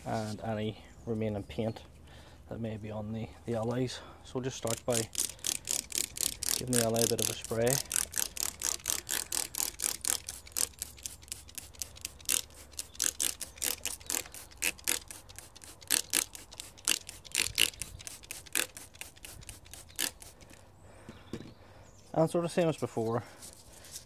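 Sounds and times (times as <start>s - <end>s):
sandpaper rubbing back and forth: 4.6s - 20.6s.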